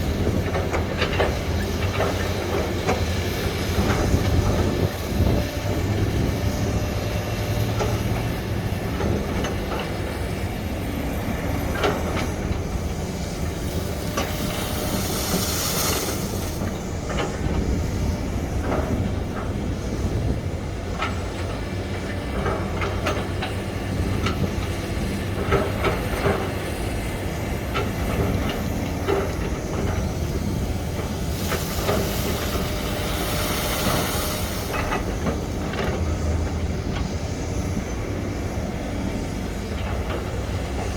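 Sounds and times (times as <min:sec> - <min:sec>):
excavator diesel engine drone: 0:00.0 - 0:40.9
hydraulic hiss: 0:13.1 - 0:17.0, 0:30.0 - 0:35.6.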